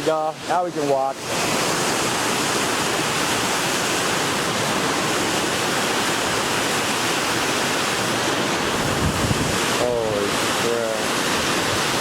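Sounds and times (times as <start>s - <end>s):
water rushing through dam gates: 0.0s - 12.0s.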